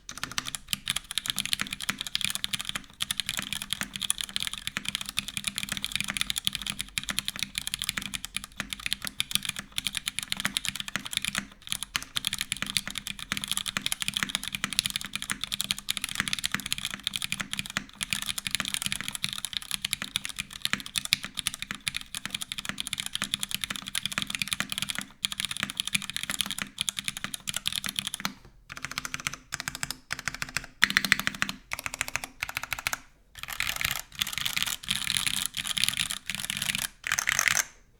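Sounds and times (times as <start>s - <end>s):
mechanical keyboard key clacks: 22.2s - 37.8s.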